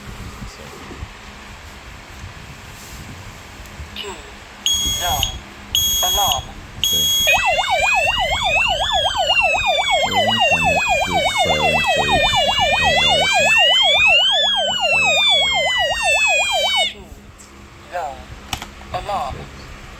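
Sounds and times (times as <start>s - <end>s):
fire alarm siren warbling: 4.7s - 17.0s
rising and falling alarm tone: 4.7s - 17.0s.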